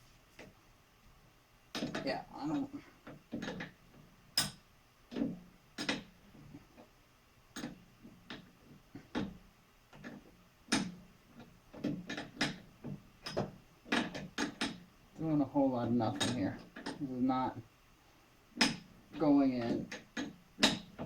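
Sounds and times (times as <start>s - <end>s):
metallic clicks and knocks: 16.1s - 17.0s, 19.6s - 21.0s.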